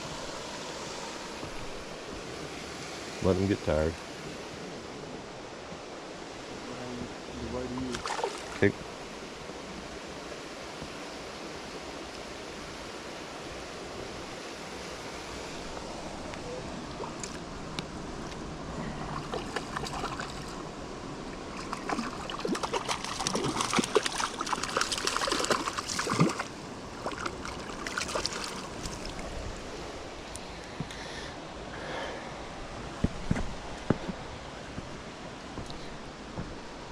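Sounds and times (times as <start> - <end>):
water splashing and sloshing: 0.0 - 3.2, 7.7 - 9.2, 15.3 - 31.1
river water running: 0.0 - 36.9.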